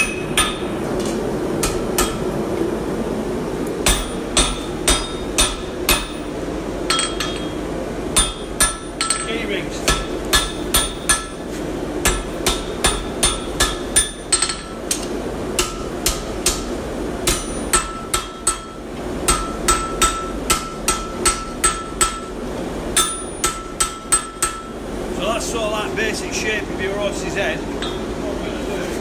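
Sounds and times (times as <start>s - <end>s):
hammer striking metal on an anvil: 0.0s - 2.3s, 3.8s - 6.3s, 6.9s - 7.6s, 8.2s - 11.4s, 12.0s - 22.4s, 23.0s - 24.8s, 27.8s - 28.0s.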